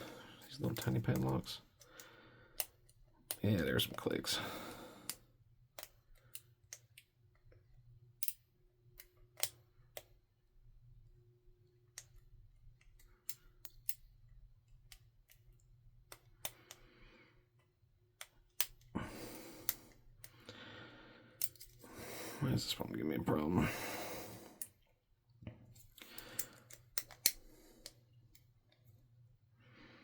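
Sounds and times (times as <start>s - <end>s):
lock pick clicking in padlock: 8.2s - 8.4s, 9.0s - 10.1s, 18.2s - 18.9s, 21.4s - 21.8s, 26.0s - 28.0s.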